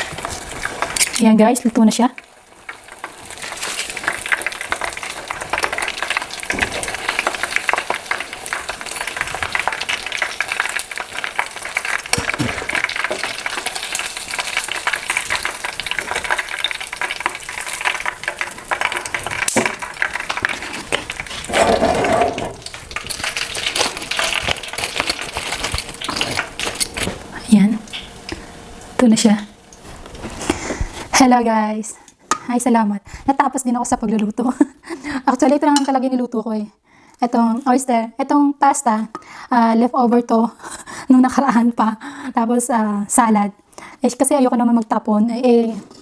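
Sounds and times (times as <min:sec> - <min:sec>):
oysters sizzling in hot oil: 0:00.0 - 0:31.3.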